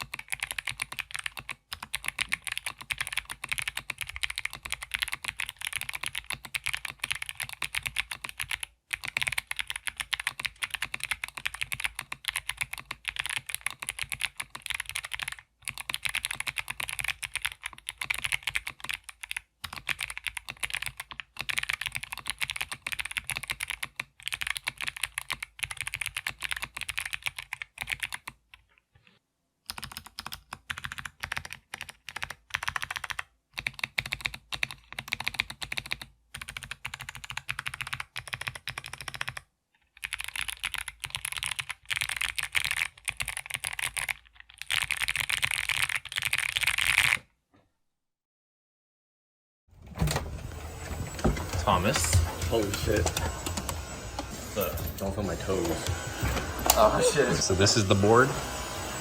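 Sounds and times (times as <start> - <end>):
mechanical keyboard typing clicks: 0.0 - 28.4, 29.7 - 39.4, 40.0 - 47.2.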